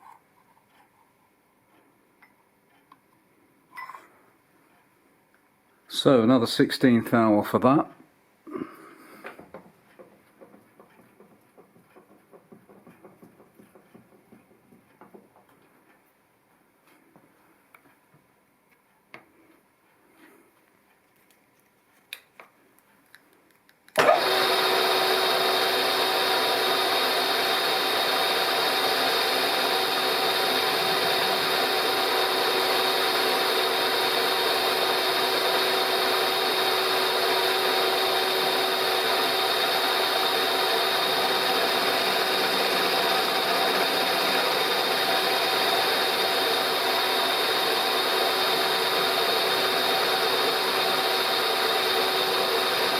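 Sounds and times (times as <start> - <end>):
milling machine spindle whine: 24.0 - 52.9.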